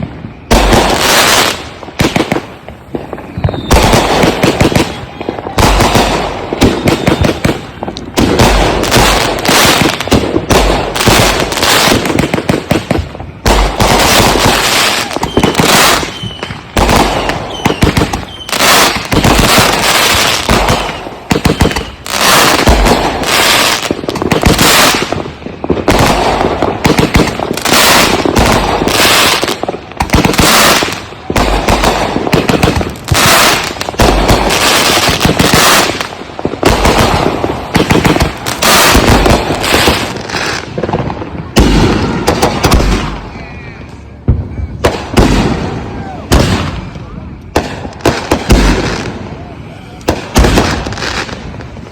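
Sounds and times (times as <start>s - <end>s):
firework whistles: 0.0s - 40.8s, 41.5s - 51.4s
firework cakes firing bangs: 0.0s - 51.9s
firework crackling: 0.0s - 51.9s.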